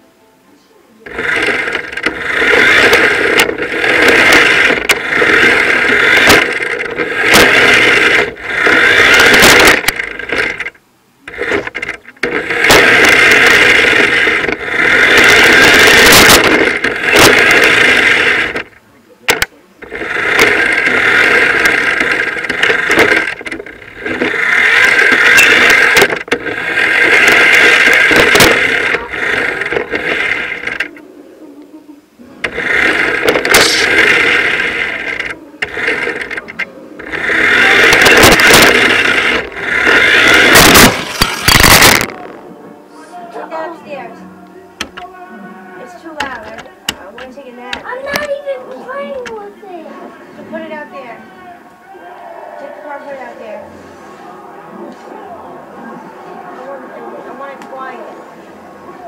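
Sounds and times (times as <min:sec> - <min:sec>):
toy car motor whining: 0:01.0 - 0:31.0, 0:32.4 - 0:42.4, 0:45.8 - 0:49.5.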